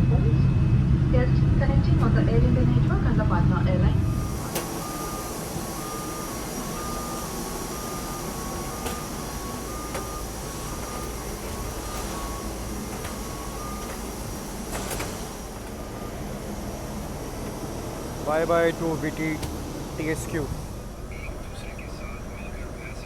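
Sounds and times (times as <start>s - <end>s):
low rumble: 0.0s - 5.2s
reversing alarm beeping: 2.0s - 23.0s.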